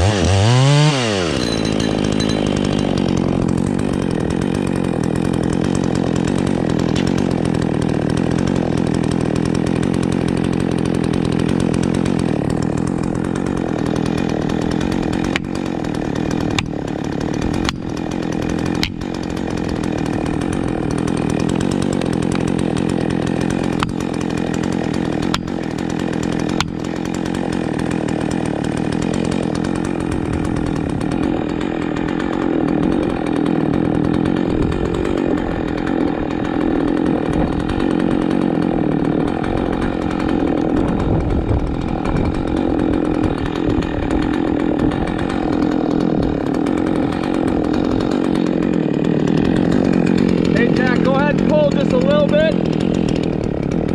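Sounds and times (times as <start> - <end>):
chainsaw cutting a tree: 0.0 - 53.9
sharp knocks: 18.8 - 19.0.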